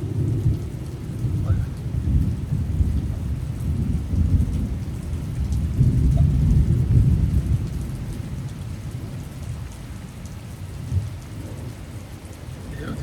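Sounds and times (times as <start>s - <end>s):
heavy rain: 0.0s - 13.0s
low roll of thunder: 0.0s - 13.0s.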